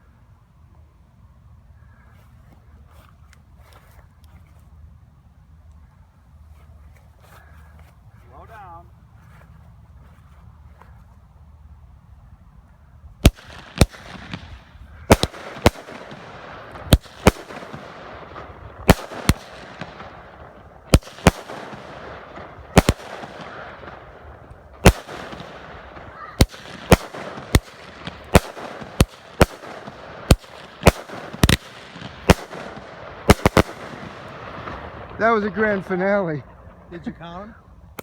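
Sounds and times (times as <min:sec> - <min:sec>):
fireworks crackling: 0:13.2 - 0:38.0
fireworks banging: 0:13.3 - 0:37.1.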